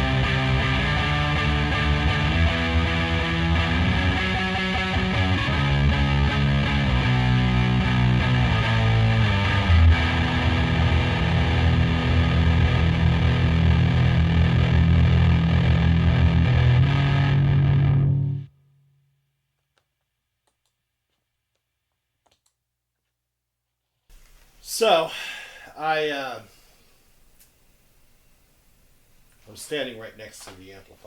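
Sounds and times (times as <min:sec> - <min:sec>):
distorted electric guitar chords: 0:00.0 - 0:18.6.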